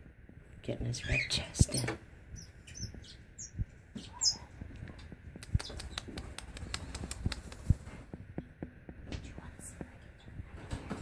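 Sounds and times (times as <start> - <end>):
parakeets chirping: 1.0 - 7.6
light clicks and taps: 4.6 - 11.0.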